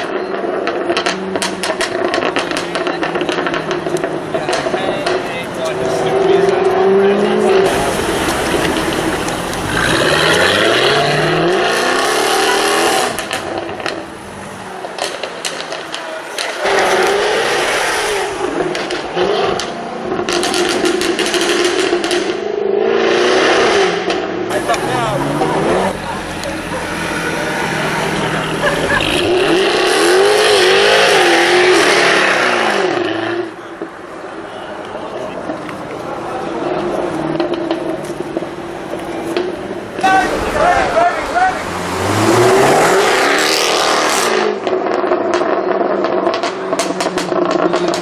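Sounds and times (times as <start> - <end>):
exhaust pops and cracks: 0.0 - 6.6, 7.6 - 11.6, 32.9 - 48.0
car engine accelerating hard: 0.0 - 33.6, 34.9 - 48.0
loud hiss: 7.7 - 10.2.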